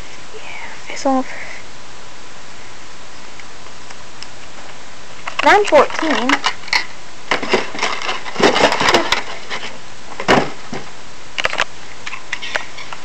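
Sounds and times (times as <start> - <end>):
steady hiss: 0.0 - 13.0
small hard objects clicking and knocking: 5.2 - 13.0.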